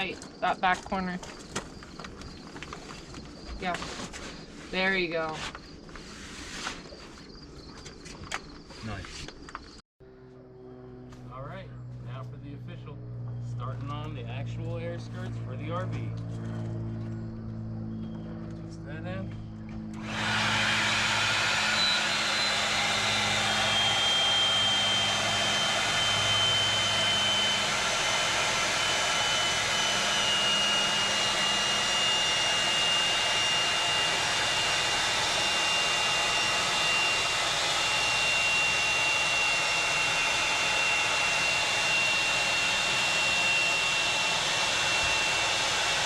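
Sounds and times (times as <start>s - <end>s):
electric air pump running: 19.7s - 46.0s.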